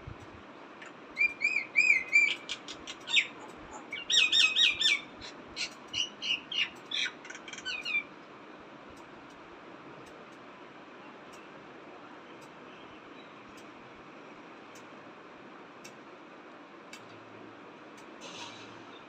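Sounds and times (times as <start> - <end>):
bird squawky chirps and whistles: 1.2 - 8.1.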